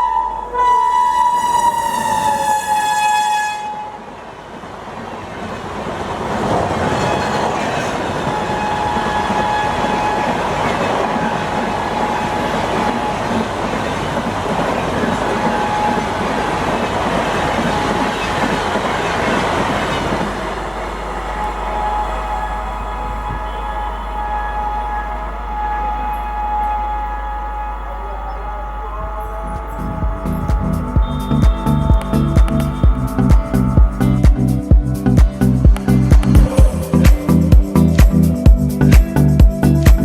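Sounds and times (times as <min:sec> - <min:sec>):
train wheels clattering over rails: 0:05.0 - 0:24.6.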